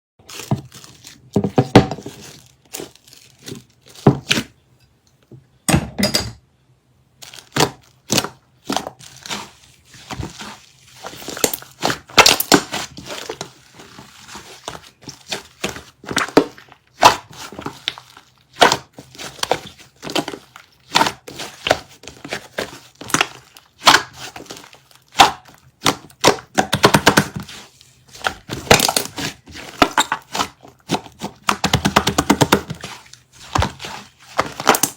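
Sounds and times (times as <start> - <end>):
slime squished by hand: 7.2 - 34.9.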